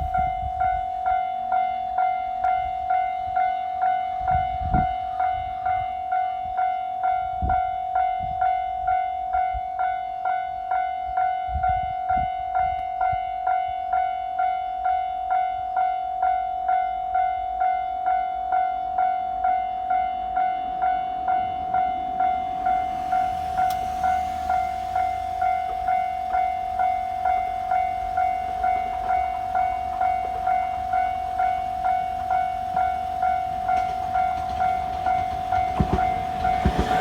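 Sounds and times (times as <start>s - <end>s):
approaching train rumble: 0.0s - 6.1s, 20.2s - 37.0s
level crossing bell clanging: 20.5s - 37.0s.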